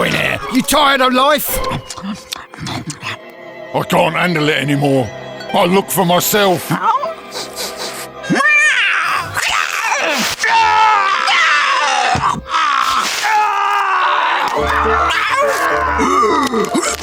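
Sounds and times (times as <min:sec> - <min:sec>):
background music: 0:00.0 - 0:17.0
cartoon characters screaming: 0:08.3 - 0:16.8.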